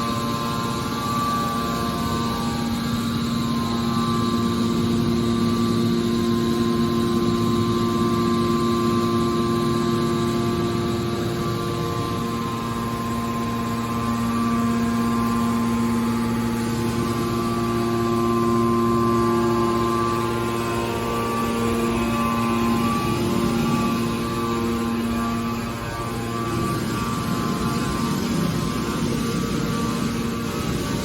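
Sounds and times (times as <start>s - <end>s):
hydraulic pump motor humming: 0.0s - 31.0s.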